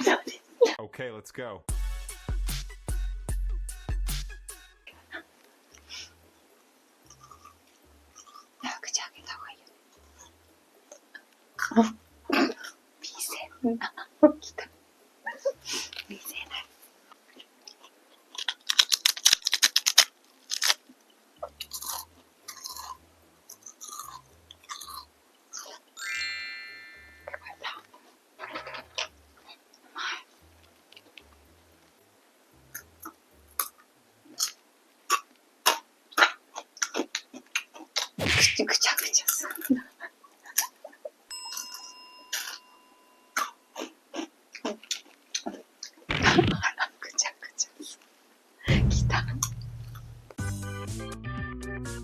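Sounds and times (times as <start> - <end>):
crunchy chewing: 7.1 - 8.6, 17.1 - 25.9, 32.6 - 38.2
faint ringing tone: 41.3 - 43.8.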